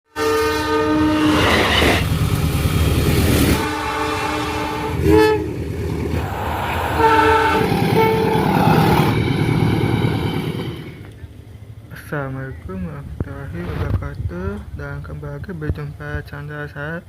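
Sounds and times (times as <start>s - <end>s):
train horn blasts: 0.1s - 2.0s, 3.5s - 5.6s, 6.9s - 9.2s
train passing at speed: 0.2s - 13.5s.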